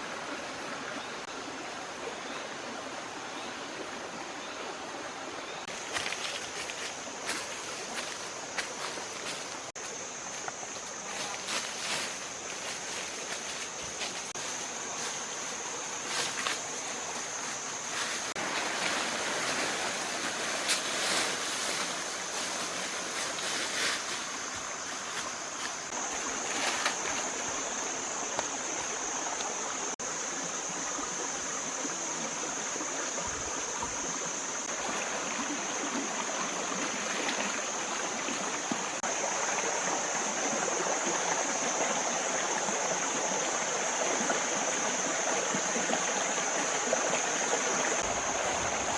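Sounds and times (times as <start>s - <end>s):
running water: 0.0s - 48.9s
high-pitched hiss: 5.4s - 48.9s
crackling rustling: 11.1s - 25.8s.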